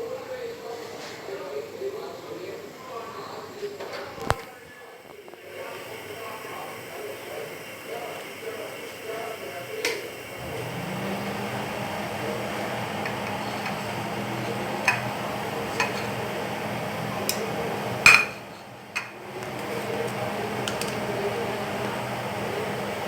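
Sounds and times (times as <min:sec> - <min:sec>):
low mechanical hum: 0:03.8 - 0:23.0
metal utensils clinking on pan: 0:13.0 - 0:16.2, 0:18.1 - 0:21.1.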